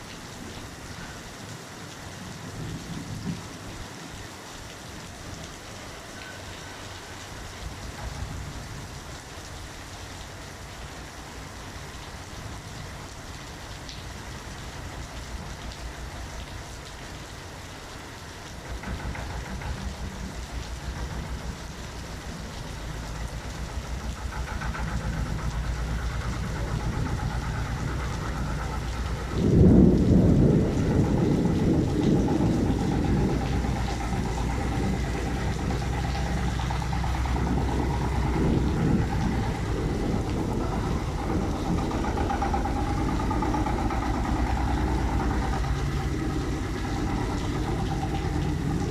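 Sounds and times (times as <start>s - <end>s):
rain falling: 0.0s - 48.9s
thunder rumbling: 18.6s - 48.9s
loud thunderclap: 26.3s - 48.9s.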